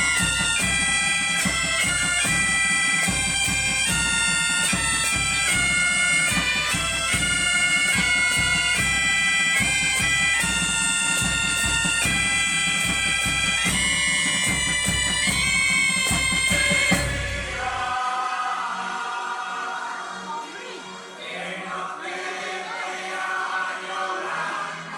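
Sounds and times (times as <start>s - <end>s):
bagpipe playing lively melody: 0.0s - 17.9s
drum beating: 0.0s - 17.9s.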